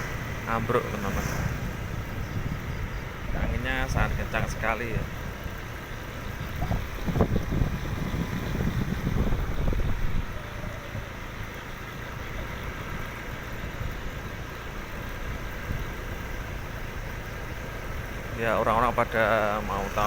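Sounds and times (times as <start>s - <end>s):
wind buffeting microphone: 0.0s - 11.5s, 15.2s - 16.5s.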